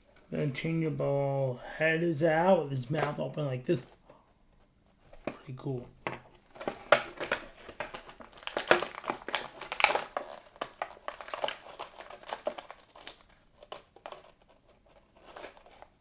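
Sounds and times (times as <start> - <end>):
plastic packaging crinkling: 5.4 - 16.0.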